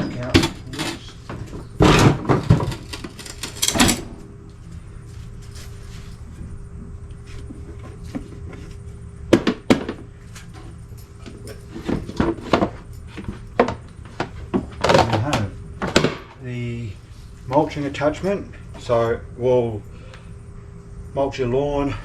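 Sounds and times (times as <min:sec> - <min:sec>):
parts knocking and clattering: 0:00.0 - 0:04.2, 0:09.3 - 0:16.4.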